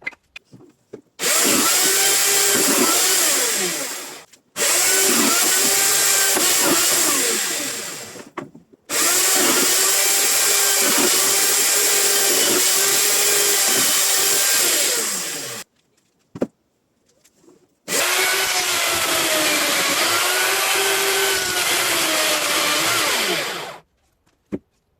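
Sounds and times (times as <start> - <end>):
electric chainsaw cutting wood: 1.2 - 8.3, 8.9 - 15.6, 17.9 - 23.8.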